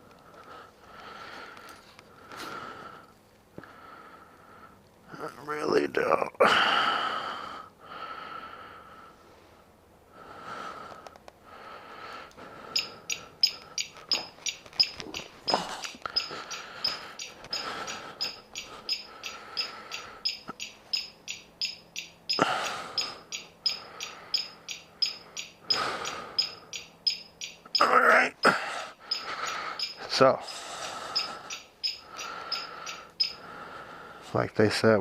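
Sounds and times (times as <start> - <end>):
high-pitched electronic beeping: 12.8 - 27.9, 29.1 - 30.1, 31.1 - 33.4.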